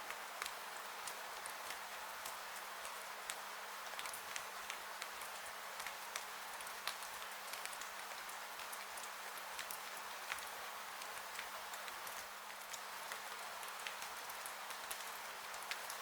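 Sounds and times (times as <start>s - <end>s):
rain hiss: 0.0s - 16.0s.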